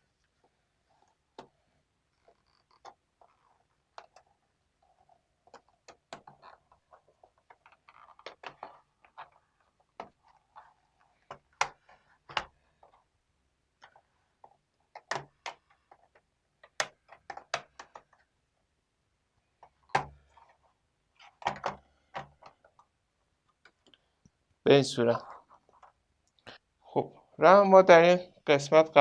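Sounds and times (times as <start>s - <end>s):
plastic scraping: 0.1s - 13.1s, 13.8s - 18.3s, 19.6s - 22.9s, 25.1s - 26.0s
plastic clips snapping: 15.0s - 15.6s, 19.9s - 20.2s.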